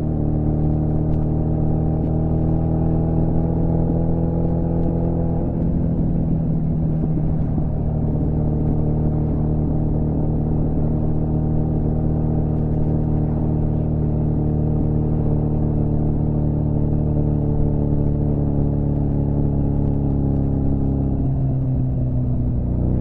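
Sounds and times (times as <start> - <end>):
motorcycle engine running: 0.0 - 23.0.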